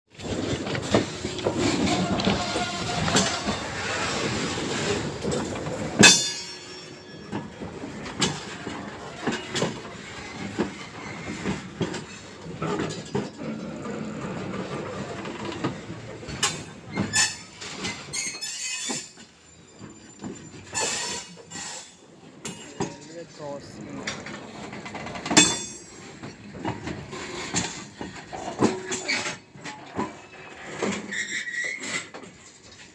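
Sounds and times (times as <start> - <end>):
train wheels clattering: 0.1 - 32.9
loud metal clank: 6.0 - 7.5, 25.2 - 26.1.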